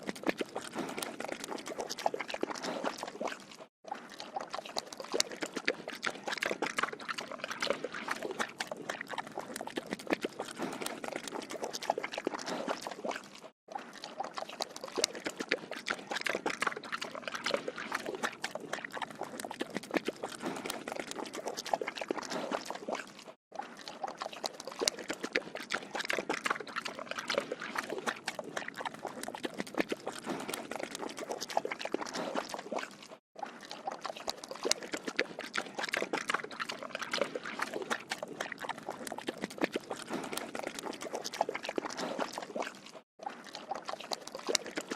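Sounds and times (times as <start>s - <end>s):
pig slurping water: 0.0s - 44.9s.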